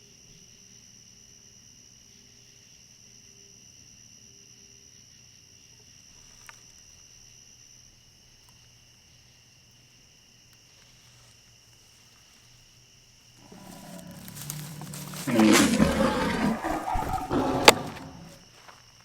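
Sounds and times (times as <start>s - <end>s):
rough noise: 13.4s - 18.4s.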